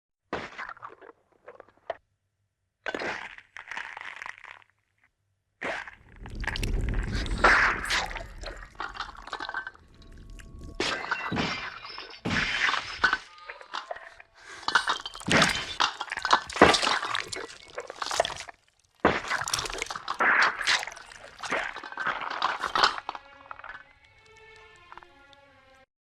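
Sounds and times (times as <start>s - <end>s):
cracking and crunching with clinks: 2.9s - 4.8s, 5.8s - 25.4s.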